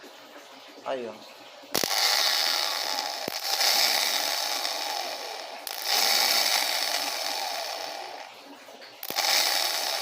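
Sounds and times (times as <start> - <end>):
starter motor whirring: 1.8 - 8.4, 9.0 - 10.0.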